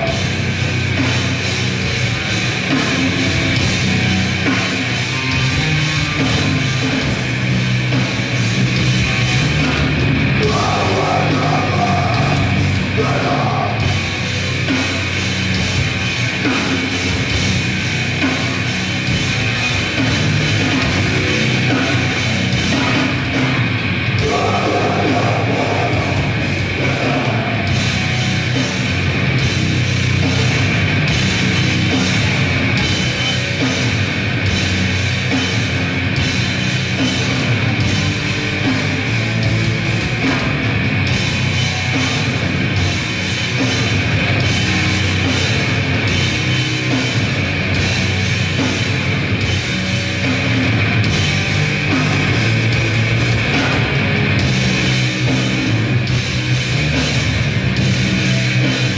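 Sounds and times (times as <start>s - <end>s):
band playing live: 0.0s - 58.9s
distorted guitar and bass: 0.0s - 58.9s
fast pounding drums: 0.0s - 58.9s
shouted vocals: 10.4s - 14.0s, 24.2s - 27.7s.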